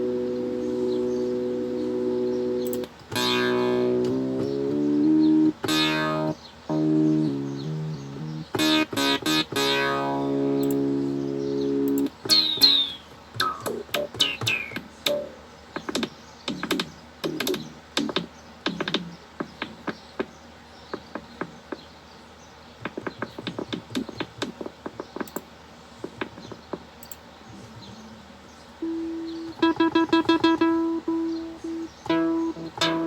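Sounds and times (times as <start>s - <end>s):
electronic percussive hits: 2.6s - 4.2s.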